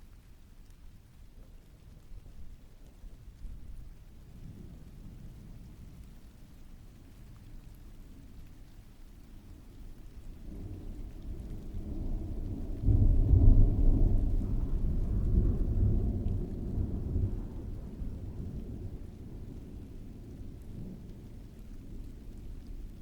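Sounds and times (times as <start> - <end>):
falling rain: 0.0 - 23.0
rolling thunder: 10.3 - 23.0.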